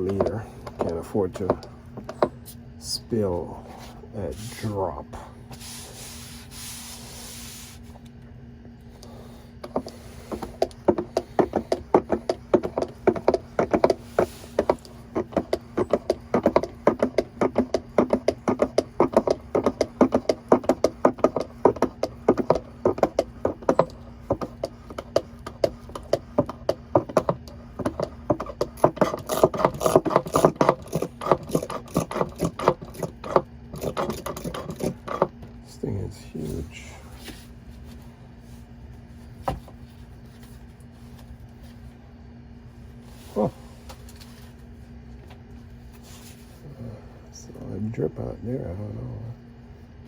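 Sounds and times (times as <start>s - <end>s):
hand fluid pump clicking knock: 14.6s - 35.3s.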